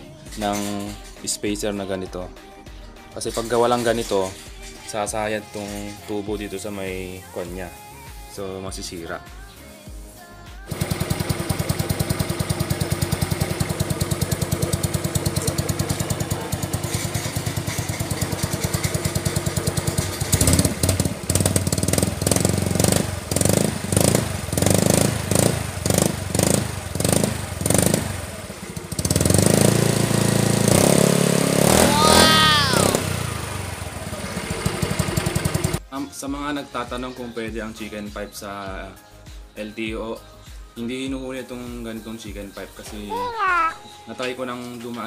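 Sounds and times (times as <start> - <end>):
scooter engine idling and revving: 10.6 - 35.8.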